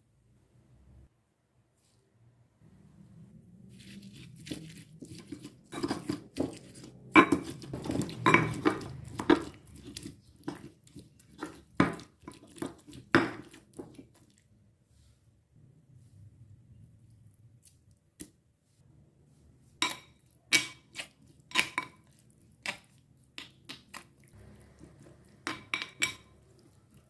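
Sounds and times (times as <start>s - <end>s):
faint low hum: 0.0s - 4.9s, 15.4s - 18.0s
knocks clacks and crinkles: 4.4s - 14.4s.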